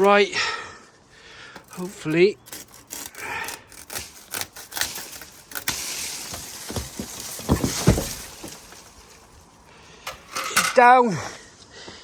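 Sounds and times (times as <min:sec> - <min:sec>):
tree trunk cracking: 0:02.4 - 0:09.6
branches and leaves swishing: 0:03.8 - 0:09.5
heavy thuds on ground: 0:06.1 - 0:09.2.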